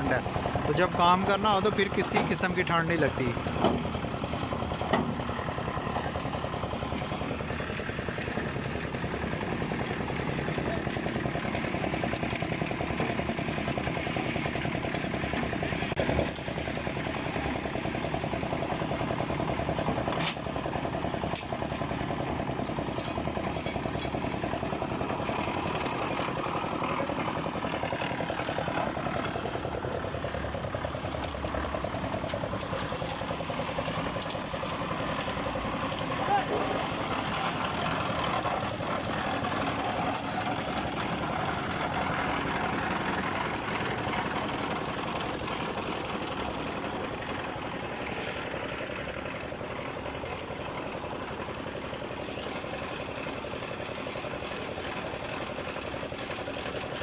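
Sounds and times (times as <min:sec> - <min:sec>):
engine running steadily: 0:00.0 - 0:57.0.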